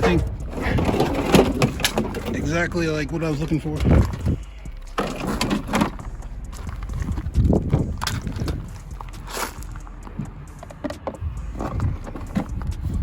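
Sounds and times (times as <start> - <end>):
wind on microphone: 3.7 - 4.8, 6.4 - 9.8, 11.2 - 13.0.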